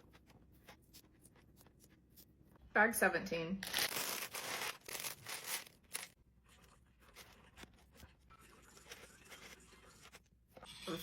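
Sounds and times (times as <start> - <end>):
plastic bag crinkling: 3.6 - 6.2.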